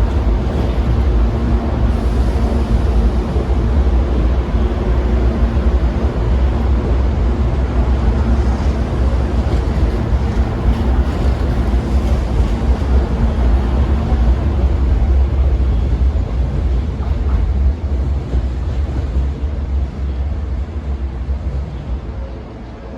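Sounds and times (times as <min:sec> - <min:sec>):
train wheels rumbling on rail: 0:00.0 - 0:22.9.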